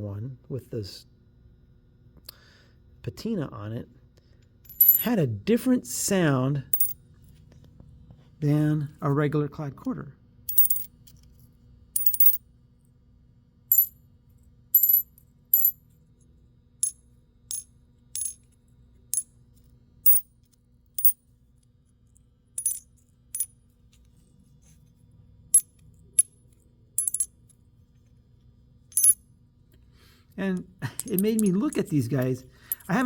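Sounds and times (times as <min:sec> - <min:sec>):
coins clinking with ring: 0:04.7 - 0:05.1, 0:06.8 - 0:07.0, 0:10.5 - 0:11.0, 0:12.0 - 0:12.4, 0:13.7 - 0:14.0, 0:14.8 - 0:15.8, 0:16.8 - 0:18.5, 0:20.0 - 0:20.4, 0:21.0 - 0:21.2, 0:22.6 - 0:23.6, 0:25.5 - 0:27.4, 0:28.9 - 0:29.2, 0:30.9 - 0:33.0.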